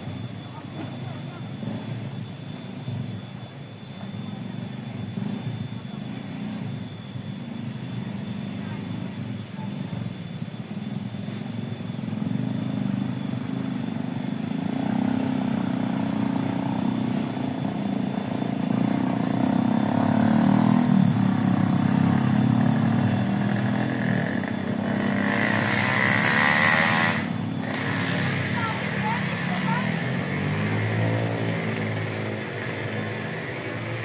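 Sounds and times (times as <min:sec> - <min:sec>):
high rising whine: 0:00.0 - 0:34.0
small engine running: 0:00.0 - 0:34.0.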